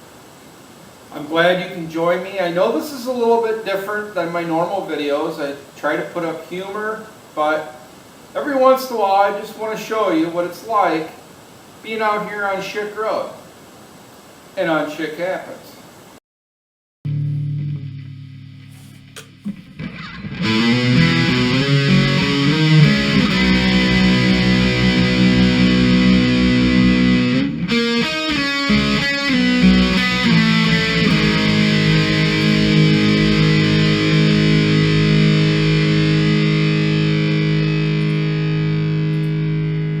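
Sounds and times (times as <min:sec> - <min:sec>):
distorted electric guitar chords: 0:17.1 - 0:40.0.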